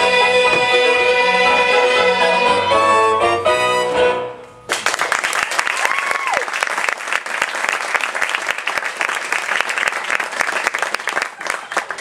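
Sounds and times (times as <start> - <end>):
audience applause: 4.7 - 12.0.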